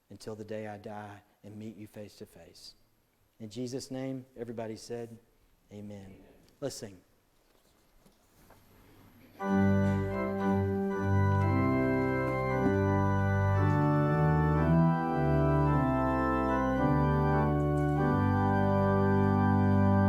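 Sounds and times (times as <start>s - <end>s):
organ playing hymn chords: 9.4s - 20.0s.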